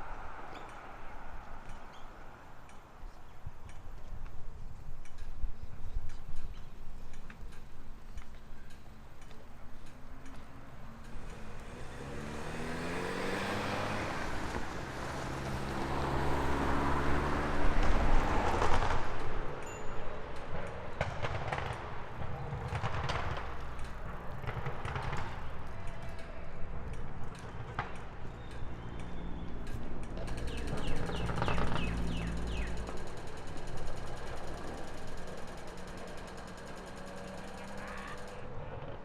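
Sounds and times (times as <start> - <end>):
vehicle accelerating past: 11.0 - 19.5, 28.7 - 39.0
scattered clicks and knocks: 17.7 - 39.0.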